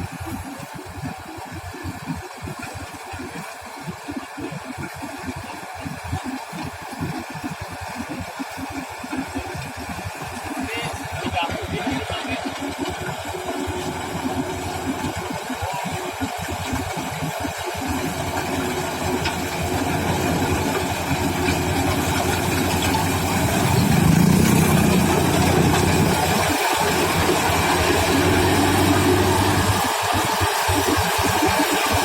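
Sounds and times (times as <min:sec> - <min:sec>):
combine harvester engine running: 0:09.8 - 0:32.0.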